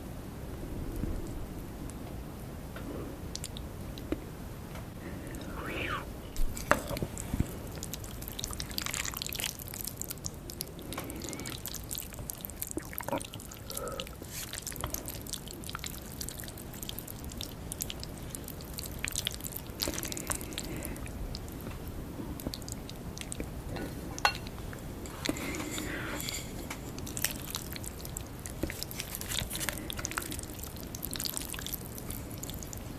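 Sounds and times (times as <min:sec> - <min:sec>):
person chewing and slurping: 0:05.4 - 0:32.9.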